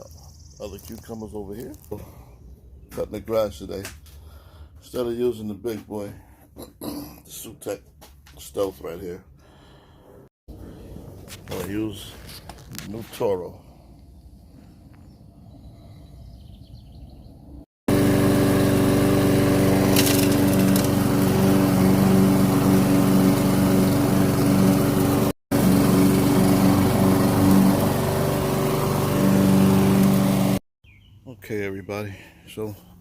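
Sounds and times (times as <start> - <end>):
lawn mower engine cutting grass: 10.5 - 13.5, 17.9 - 30.6.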